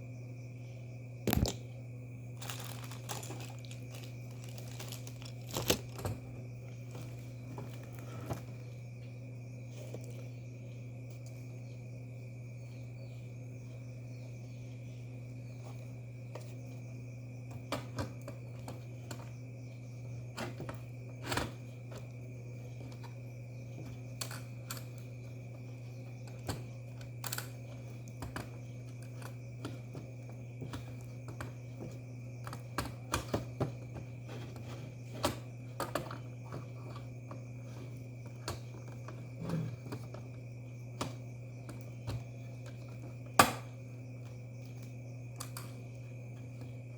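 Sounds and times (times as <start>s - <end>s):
low electrical hum: 0.0s - 46.9s.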